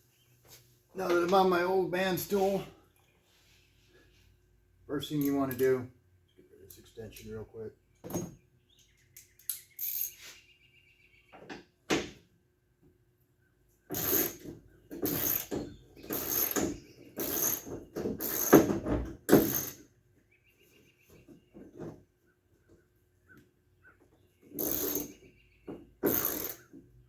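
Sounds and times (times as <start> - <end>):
ratchet clicking: 13.9 - 14.4, 16.1 - 18.7, 24.6 - 25.2, 26.0 - 26.7.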